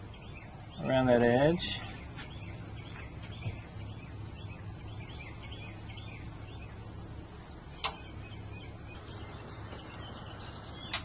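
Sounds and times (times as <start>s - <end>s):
small birds chirping: 0.0s - 11.0s
steady low hum: 0.0s - 11.0s
sharp click: 7.8s - 8.0s.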